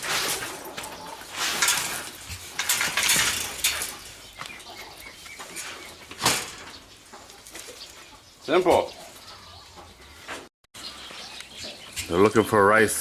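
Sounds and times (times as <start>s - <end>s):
chain-link gate rattling and scraping: 0.0s - 7.9s.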